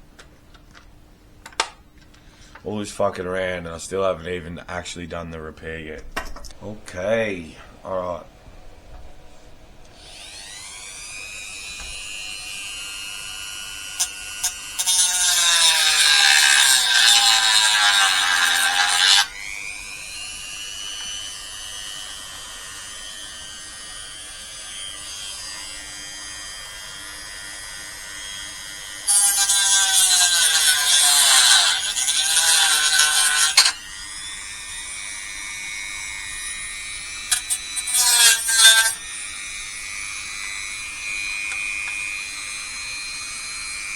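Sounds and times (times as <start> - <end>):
handheld power tool motor: 9.9 - 43.9.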